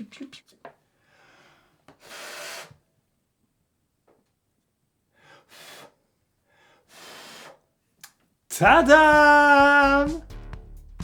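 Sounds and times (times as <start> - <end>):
person's breath puffs: 0.9 - 2.8, 5.1 - 7.7.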